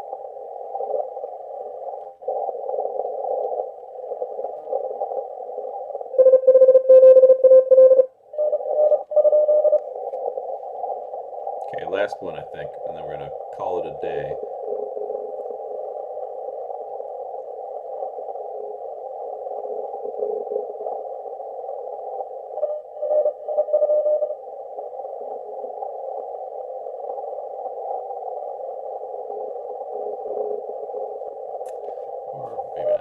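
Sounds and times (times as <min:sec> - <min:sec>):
radio hiss: 0:00.0 - 0:06.1, 0:08.4 - 0:33.0
morse code tones: 0:06.2 - 0:10.0
sharp click: 0:31.6 - 0:31.9.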